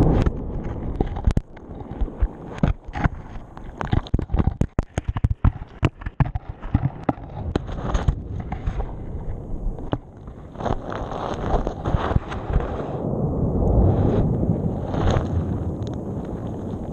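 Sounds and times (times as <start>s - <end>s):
camera knocking on sand and stones: 0.0s - 9.0s
surging water rumble: 7.2s - 16.9s.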